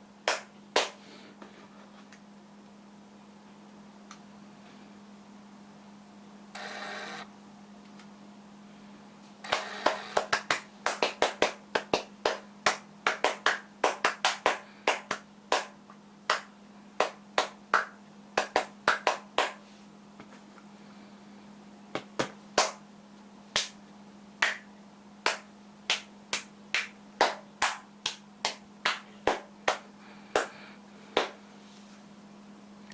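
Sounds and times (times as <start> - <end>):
steady low hum: 0.0 - 32.9
hand claps and snaps: 0.3 - 1.0, 9.5 - 19.6, 22.0 - 22.8, 23.6 - 23.8, 24.4 - 30.6, 31.2 - 31.4.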